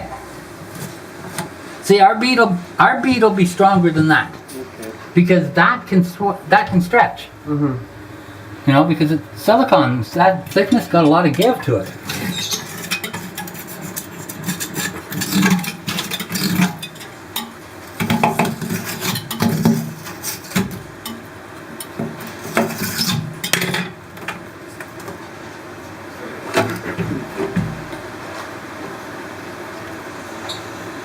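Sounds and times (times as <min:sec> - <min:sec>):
tools scraping on glass: 0:10.4 - 0:24.0.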